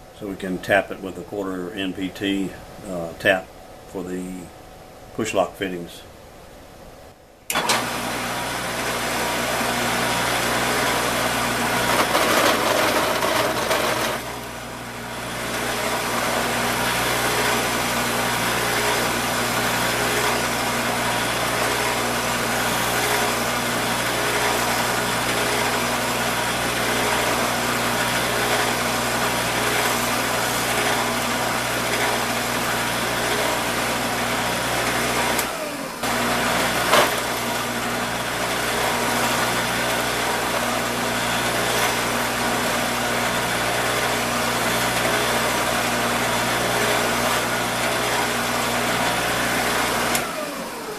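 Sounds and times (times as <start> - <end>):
power tool motor drilling plastic: 9.2 - 50.9.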